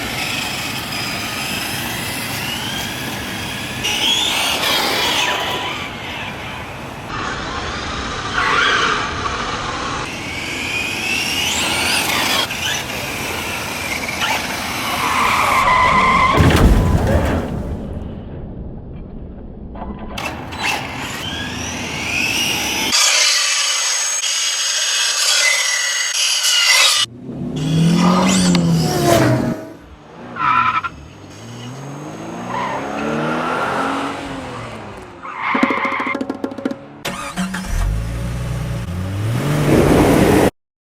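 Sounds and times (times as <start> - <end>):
electric motor whining: 0.0 - 6.9, 8.2 - 15.0, 20.2 - 29.9
tyres on gravel: 0.0 - 18.0, 20.2 - 23.6, 26.2 - 38.8.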